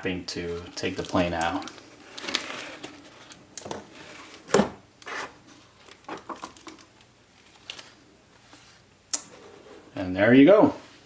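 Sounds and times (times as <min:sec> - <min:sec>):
plastic wrapping crinkling: 0:00.5 - 0:04.4, 0:05.0 - 0:08.8.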